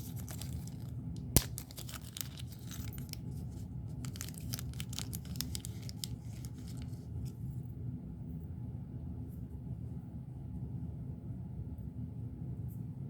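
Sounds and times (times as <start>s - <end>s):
plastic packaging crinkling: 0.0s - 7.4s.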